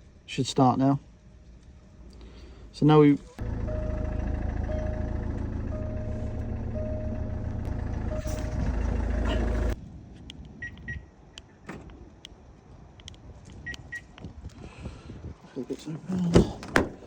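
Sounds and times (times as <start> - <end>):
car engine running: 3.4 - 9.8.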